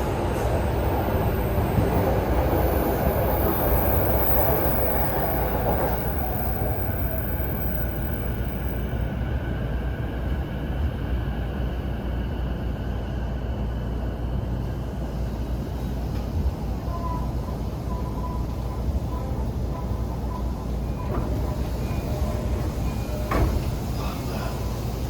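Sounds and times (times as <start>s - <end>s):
train wheels rumbling on track: 0.0s - 25.0s.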